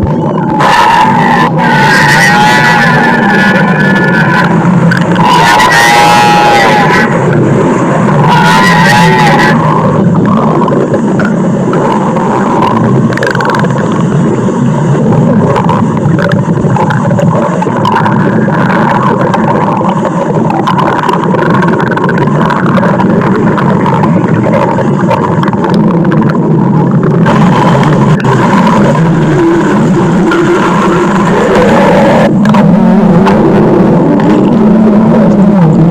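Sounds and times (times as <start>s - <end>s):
stomach growl rumble: 0.0s - 35.9s.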